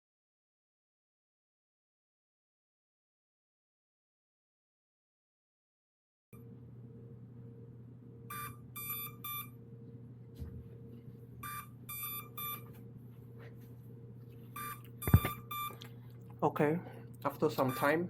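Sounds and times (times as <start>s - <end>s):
drone short high beeps: 14.6s - 15.8s.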